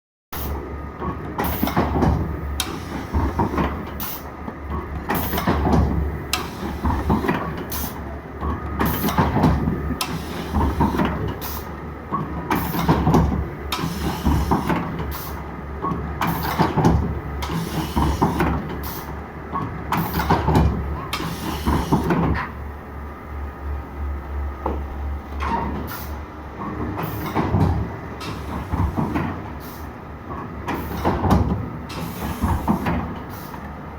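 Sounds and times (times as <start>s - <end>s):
machine hissing: 9.9s - 11.7s, 21.1s - 22.1s
machine clunks: 26.6s - 29.6s.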